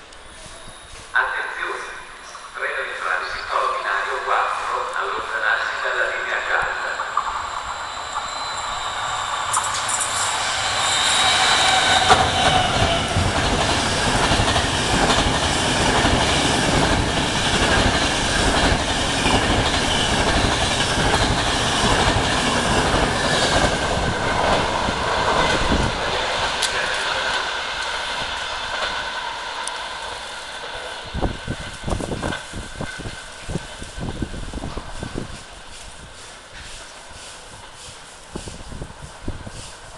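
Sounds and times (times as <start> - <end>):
train wheels rumbling on rails: 0.0 - 39.9
faint high wheel whine: 6.8 - 12.1.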